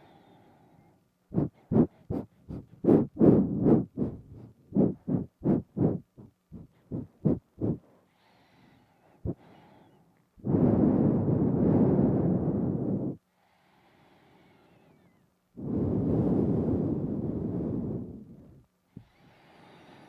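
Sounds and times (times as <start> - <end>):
faint hiss: 0.0 - 20.0
sharp nasal breath puffs: 0.0 - 20.0
long breath out: 7.7 - 16.0.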